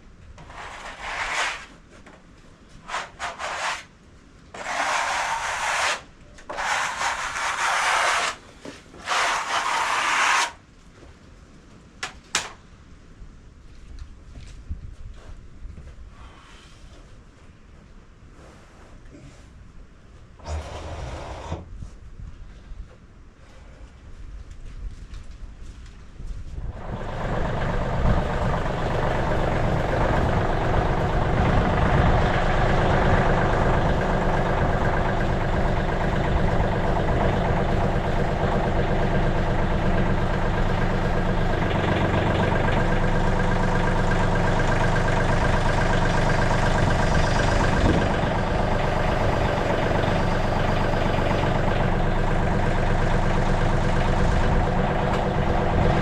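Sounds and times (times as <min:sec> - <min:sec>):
sawmill engine running: 0:20.4 - 0:21.6, 0:26.6 - 0:56.0.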